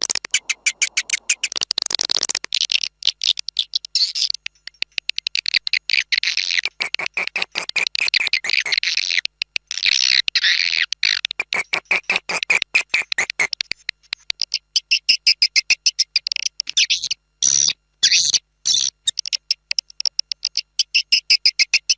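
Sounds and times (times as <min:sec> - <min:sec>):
swiftlets twittering chirps: 0:00.0 - 0:06.7.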